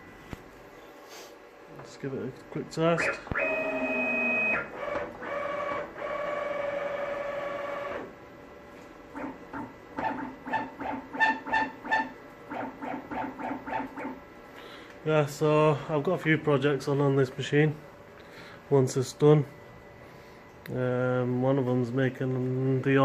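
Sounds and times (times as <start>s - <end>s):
stepper motors whining: 2.9s - 8.1s.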